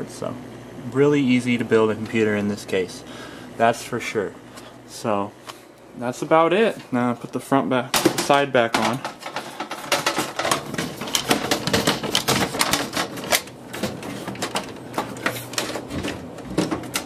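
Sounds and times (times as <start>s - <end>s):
metal panel clicks and rattles: 8.0s - 17.0s.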